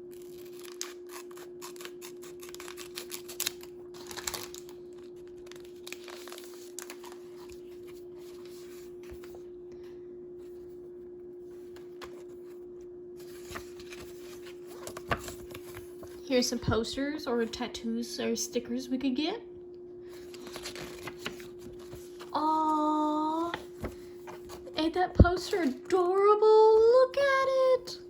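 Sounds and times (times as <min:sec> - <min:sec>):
steady low hum: 0:00.0 - 0:28.0
packaging rustling: 0:00.1 - 0:09.4, 0:13.2 - 0:16.2, 0:20.2 - 0:22.8.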